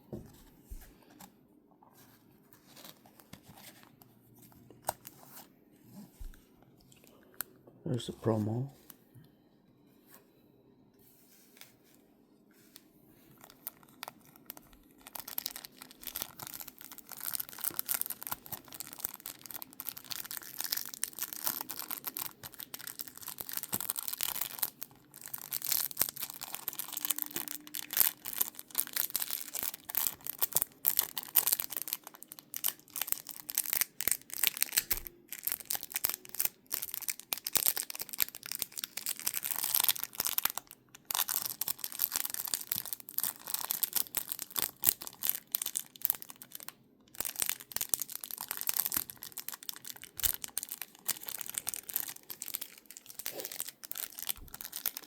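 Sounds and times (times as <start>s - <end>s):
packaging torn and crinkled: 13.4s - 55.0s.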